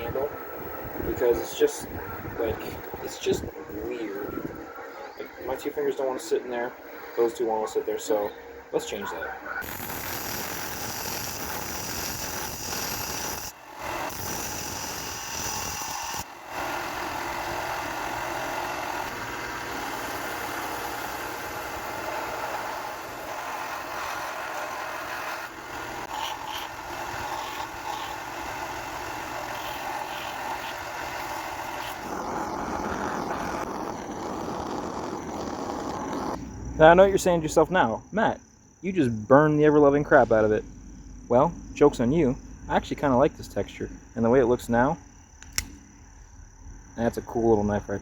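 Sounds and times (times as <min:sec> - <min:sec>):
shop tool hissing and humming: 0:09.6 - 0:36.4.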